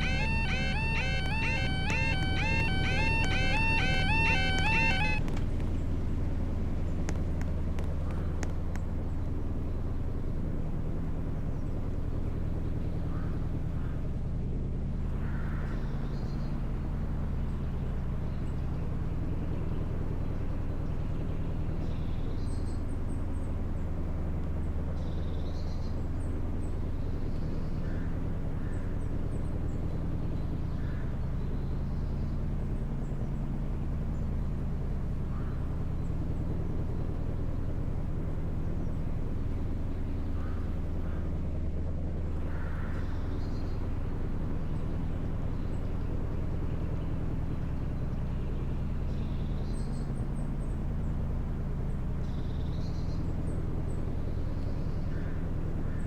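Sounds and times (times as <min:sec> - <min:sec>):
faint high chirps: 0:00.0 - 0:05.2
vehicle engine idling: 0:00.0 - 0:13.9
low engine hum: 0:00.0 - 0:56.0.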